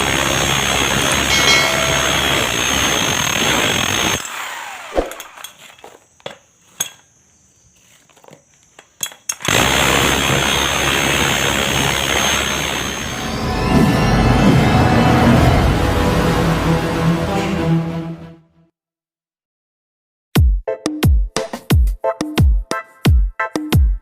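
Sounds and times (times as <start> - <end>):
power tool whining: 0.0 - 6.0, 9.4 - 16.6.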